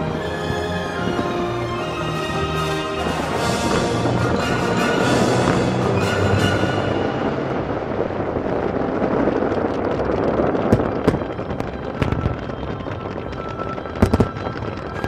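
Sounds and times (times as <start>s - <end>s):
orchestral music: 0.0s - 9.2s
fireworks crackling: 0.0s - 15.0s
firework bangs: 2.2s - 15.0s.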